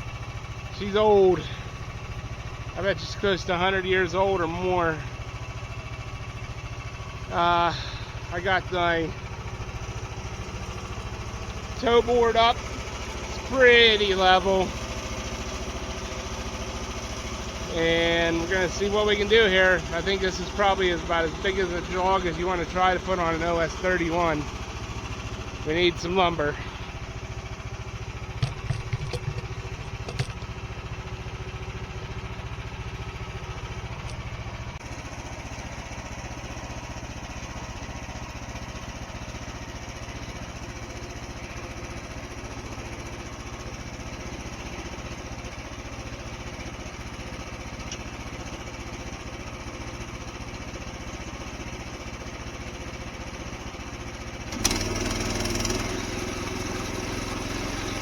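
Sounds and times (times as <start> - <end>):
small gas engine running: 0.0 - 58.0
sharp knocks: 28.4 - 30.5.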